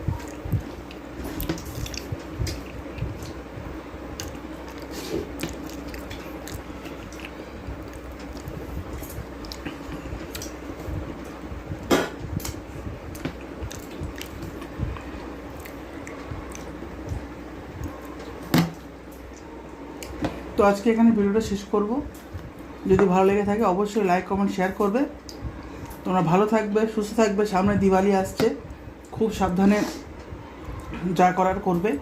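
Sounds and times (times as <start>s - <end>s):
person chewing food: 0.0s - 18.4s, 19.1s - 20.5s
low hum: 0.0s - 32.0s.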